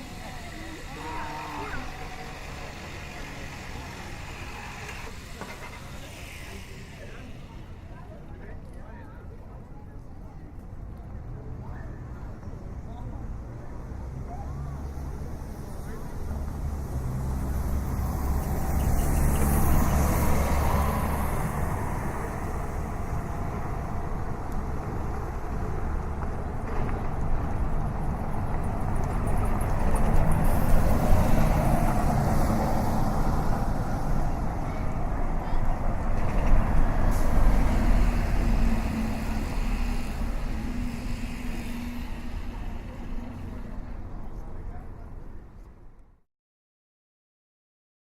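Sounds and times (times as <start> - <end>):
traffic noise: 0.0 - 46.2
vehicle passing close by: 16.2 - 44.1.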